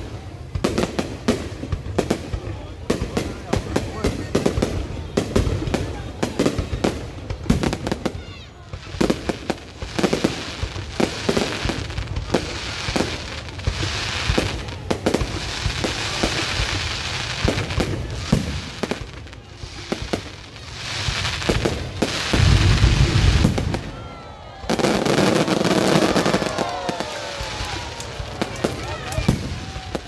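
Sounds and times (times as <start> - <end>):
fireworks bangs: 0.0 - 30.0
fireworks crackling hiss: 0.0 - 30.0.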